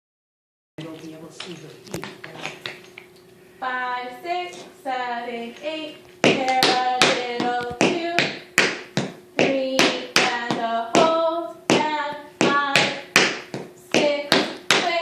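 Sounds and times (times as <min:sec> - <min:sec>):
tap shoes on hard floor: 0:06.2 - 0:15.0.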